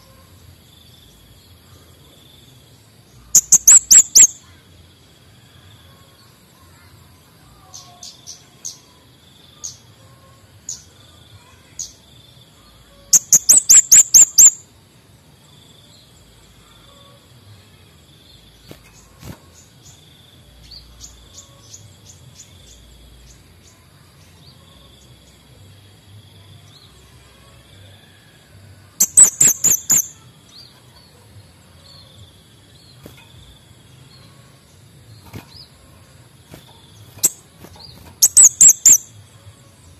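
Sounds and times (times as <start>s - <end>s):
bird chirps: 3.3s - 4.5s, 12.7s - 14.7s, 29.0s - 31.2s, 31.8s - 39.3s
songbird rapid high notes: 3.4s - 4.3s, 29.0s - 30.1s, 36.5s - 39.1s.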